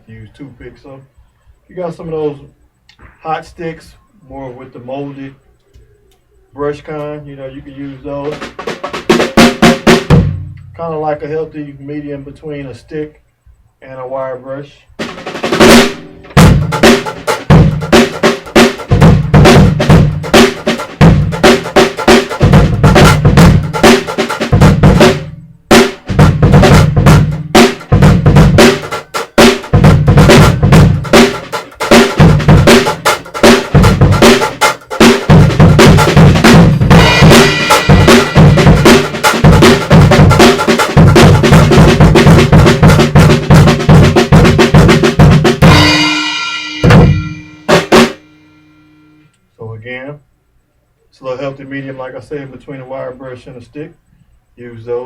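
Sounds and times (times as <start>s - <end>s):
bass drum and snare groove: 8.2s - 10.8s, 15.0s - 48.2s
cymbal ringing: 36.6s - 39.7s, 45.6s - 49.4s.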